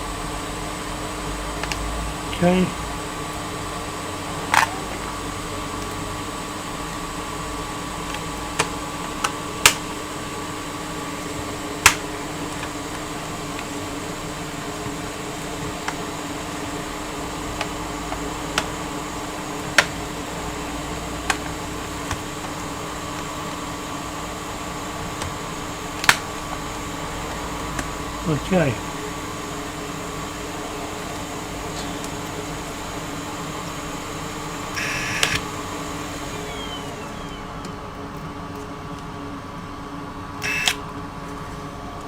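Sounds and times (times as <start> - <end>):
bench equipment hum: 0.0 - 42.0
sharp clicks of small tools: 34.8 - 35.4.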